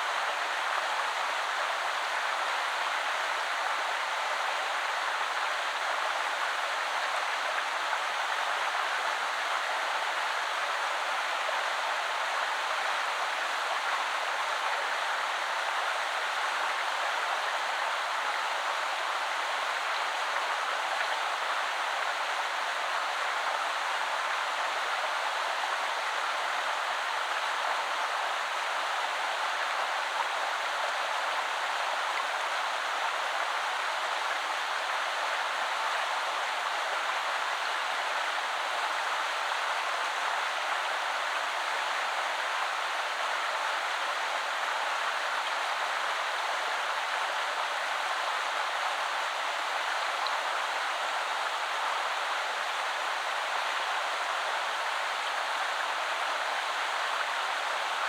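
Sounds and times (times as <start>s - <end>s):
river flowing over stones: 12.2s - 58.0s.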